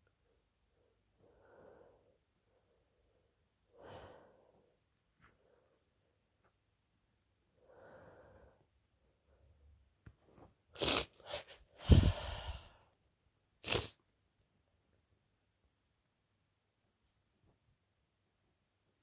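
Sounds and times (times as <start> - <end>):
faint breath in: 11.2 - 12.9.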